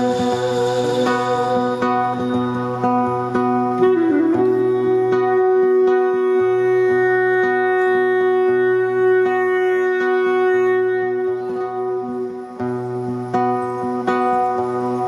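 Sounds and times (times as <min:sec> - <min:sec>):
low steady drone: 0:00.0 - 0:04.8
held wind instrument note: 0:00.0 - 0:12.6
plucked string notes: 0:00.0 - 0:15.0.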